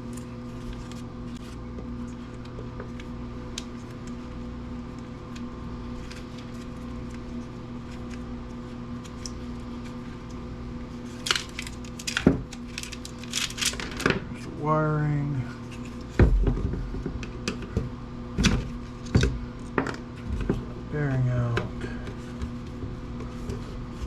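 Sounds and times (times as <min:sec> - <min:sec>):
steady low hum: 0:00.0 - 0:24.0
small parts clicking and clattering: 0:11.2 - 0:14.1.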